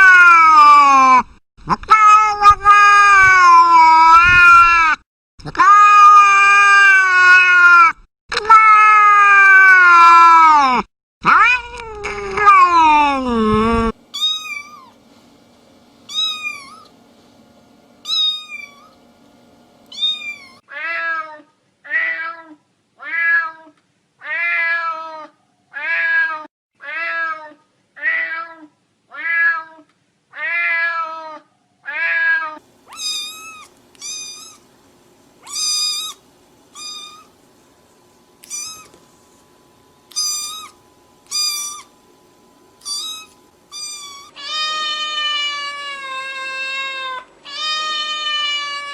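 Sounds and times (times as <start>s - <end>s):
cats meowing: 14.2s - 15.0s, 16.1s - 17.0s, 18.1s - 19.0s, 19.9s - 20.6s, 32.9s - 34.6s, 35.4s - 37.3s, 38.4s - 39.0s, 40.1s - 41.9s, 42.8s - 48.9s.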